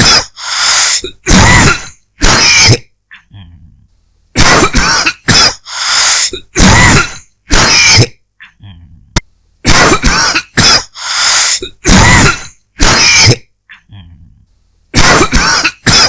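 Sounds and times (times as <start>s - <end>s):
person coughing harshly: 0.0s - 3.3s, 4.4s - 8.2s, 9.6s - 13.9s, 15.0s - 16.0s.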